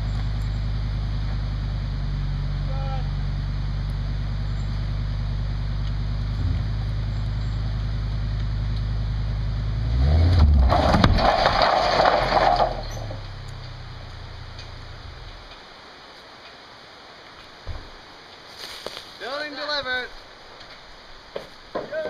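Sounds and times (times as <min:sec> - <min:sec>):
vehicle engine running: 0:00.0 - 0:15.6
cabin scraping and rumbling off trailer: 0:09.8 - 0:13.4
low thud: 0:10.3 - 0:13.2.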